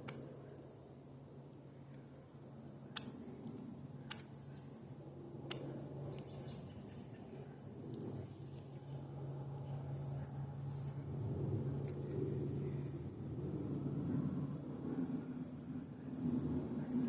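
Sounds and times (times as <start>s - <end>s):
steady low hum: 0.0s - 17.0s
birds clicking: 5.4s - 9.1s.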